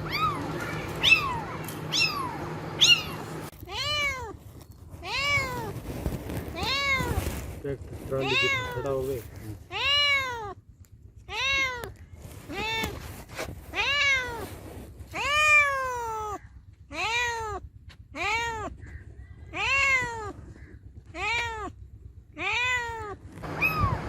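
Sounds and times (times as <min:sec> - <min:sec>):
cat meowing: 0:00.0 - 0:04.4, 0:05.0 - 0:05.8, 0:06.5 - 0:07.3, 0:08.2 - 0:09.0, 0:09.7 - 0:10.6, 0:11.2 - 0:13.0, 0:13.7 - 0:14.5, 0:15.1 - 0:24.0.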